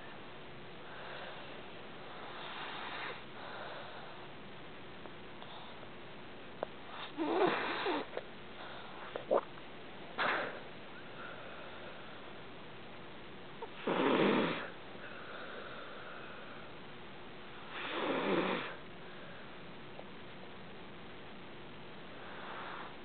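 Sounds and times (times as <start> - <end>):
pet snoring: 2.1 - 4.1, 6.9 - 8.2, 13.6 - 16.2, 17.7 - 18.8, 22.2 - 23.0.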